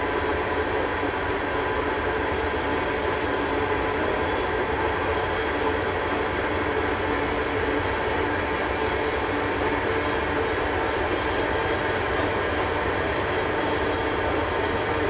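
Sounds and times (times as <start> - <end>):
train wheels rumbling on rails: 0.0 - 15.0.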